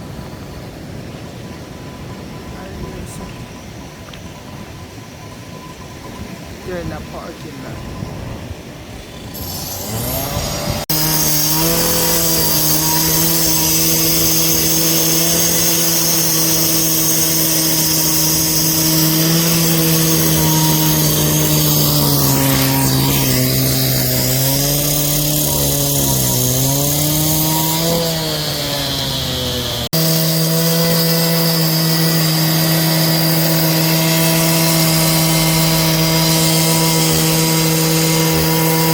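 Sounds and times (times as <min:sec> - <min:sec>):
small engine running at high speed: 0:09.0 - 0:38.9.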